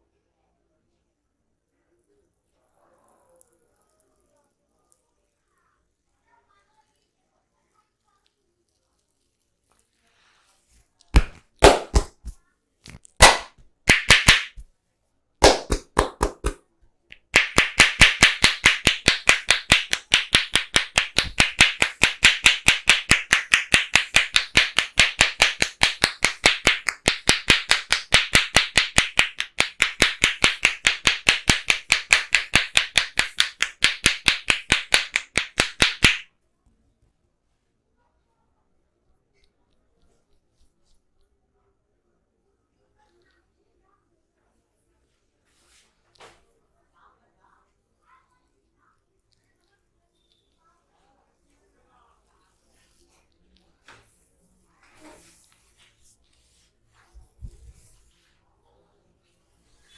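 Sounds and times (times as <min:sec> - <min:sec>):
palms clapping on head: 0:11.2 - 0:14.7, 0:15.4 - 0:36.3.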